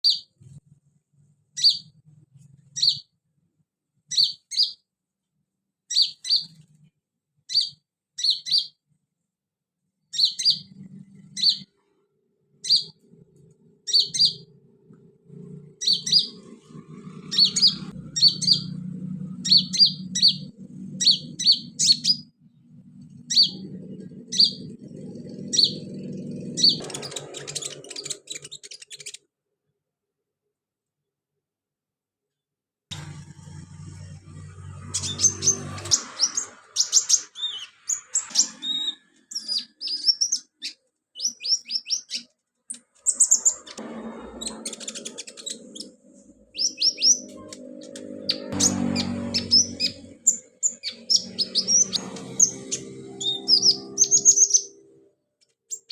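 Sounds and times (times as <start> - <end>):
sunbird chirping: 1.6 - 2.0, 2.7 - 3.1, 4.1 - 4.8, 5.9 - 6.6, 7.5 - 8.8, 10.1 - 11.7, 12.6 - 13.0, 13.9 - 14.5, 15.3 - 29.2, 34.3 - 42.3, 43.1 - 54.8
low hum: 32.9 - 36.2, 43.7 - 55.1.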